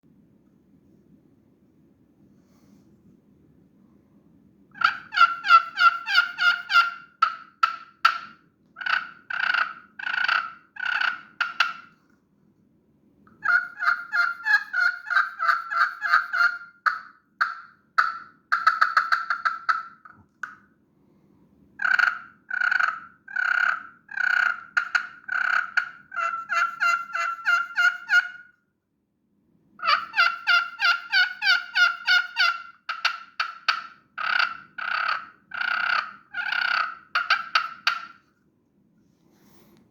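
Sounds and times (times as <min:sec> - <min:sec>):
turkey call yelps: 0:04.8 - 0:11.9, 0:13.4 - 0:20.1, 0:21.8 - 0:28.5, 0:29.8 - 0:38.2.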